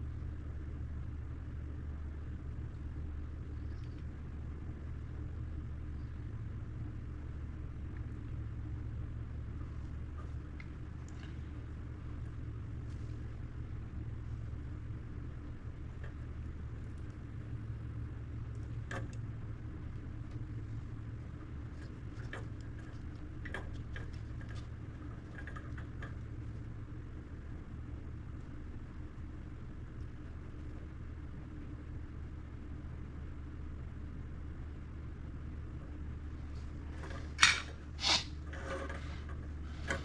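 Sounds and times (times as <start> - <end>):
steady low hum: 0.0 - 40.0
light clicks and taps: 9.6 - 13.3, 21.7 - 26.7.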